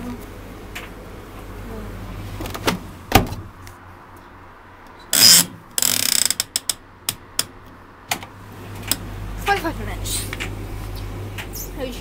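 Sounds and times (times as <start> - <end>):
timer dial scraping: 5.1 - 6.8
ratcheting clicks: 5.1 - 7.5.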